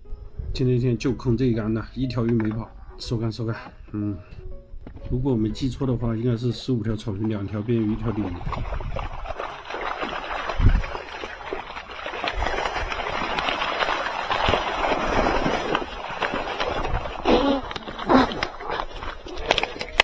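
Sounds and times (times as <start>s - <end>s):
fish thrashing: 0.0s - 20.0s
water splashing: 0.0s - 20.0s.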